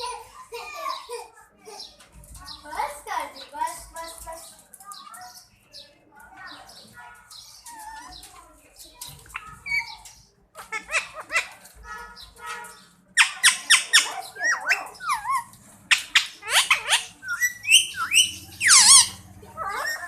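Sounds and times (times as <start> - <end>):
parakeet squawking and chattering: 9.1 - 20.0.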